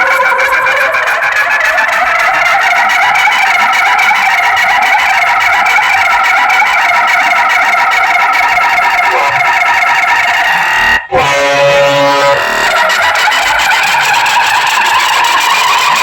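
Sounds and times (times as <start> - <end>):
multi-tone vehicle air horn: 10.5 - 12.6.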